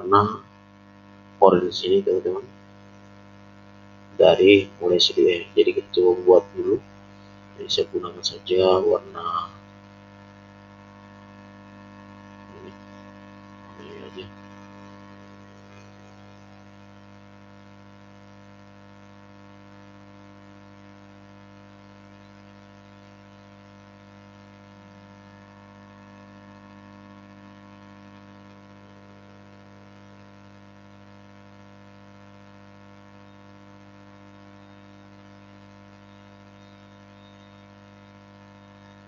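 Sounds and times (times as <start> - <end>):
electrical hum: 0.0 - 0.5, 1.4 - 2.6, 3.9 - 17.4.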